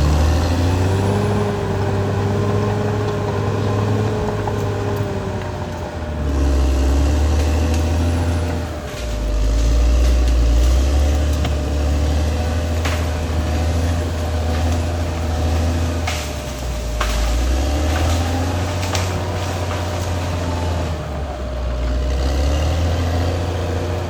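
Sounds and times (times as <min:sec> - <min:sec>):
bulldozer diesel engine droning: 0:00.0 - 0:24.0
sharp cracks: 0:07.2 - 0:21.2.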